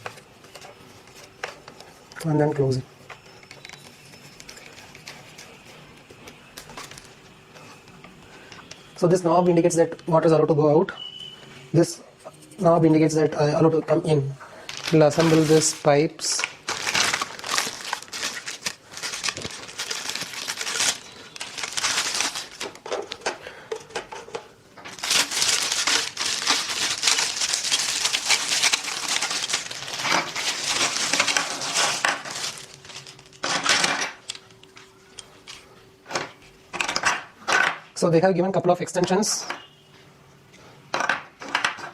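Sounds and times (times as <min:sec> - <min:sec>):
crinkling and rustling: 0:14.6 - 0:37.2.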